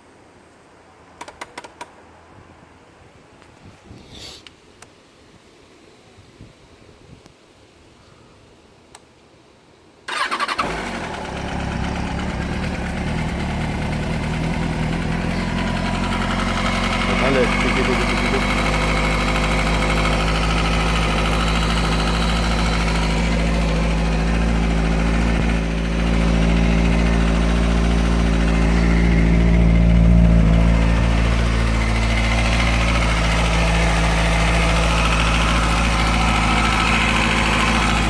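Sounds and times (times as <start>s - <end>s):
engine ticking: 10.1s - 38.0s
motorcycle engine idling: 10.1s - 38.0s.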